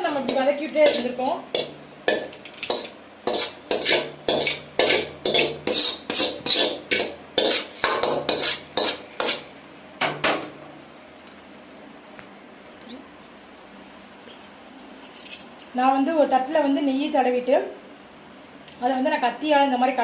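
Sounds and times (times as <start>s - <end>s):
spoon scraping and stirring thick mixture: 0.0s - 9.6s.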